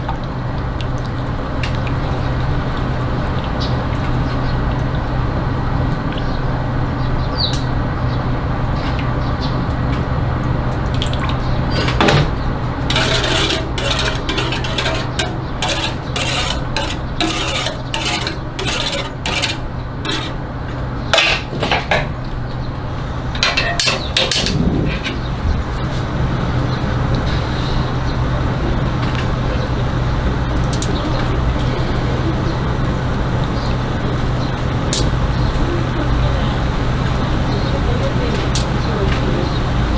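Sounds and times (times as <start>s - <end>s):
steady low hum: 11.4s - 21.2s, 22.6s - 39.9s.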